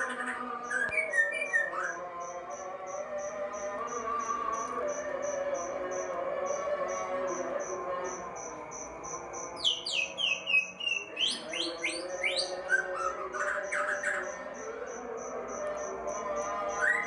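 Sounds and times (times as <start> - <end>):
bird singing whistled phrases: 0.7 - 2.0.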